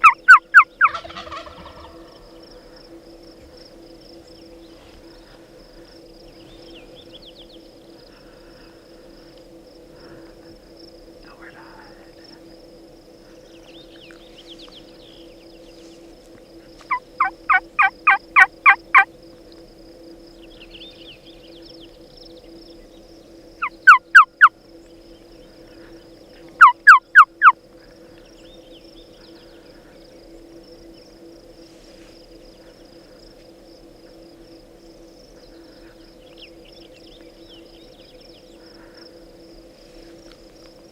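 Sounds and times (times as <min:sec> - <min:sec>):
turkey yelping: 0:00.0 - 0:02.0, 0:16.9 - 0:19.1, 0:23.6 - 0:24.4, 0:26.6 - 0:27.5
insect drone: 0:00.0 - 0:40.9.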